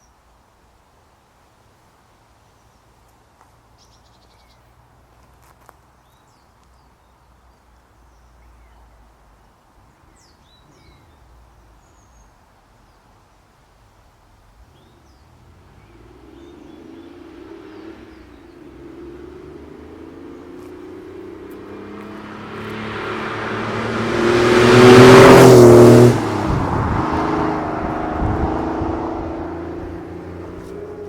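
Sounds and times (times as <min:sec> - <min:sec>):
low rumble: 0:24.0 - 0:31.0.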